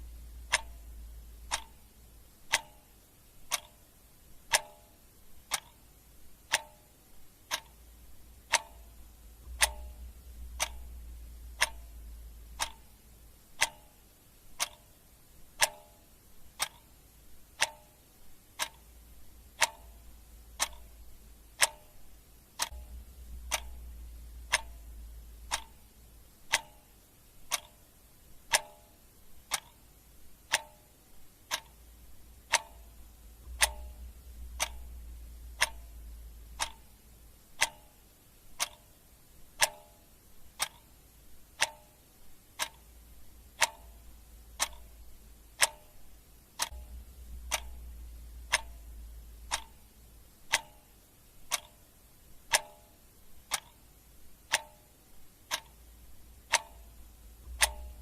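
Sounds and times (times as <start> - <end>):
clock ticking: 0.0 - 58.0.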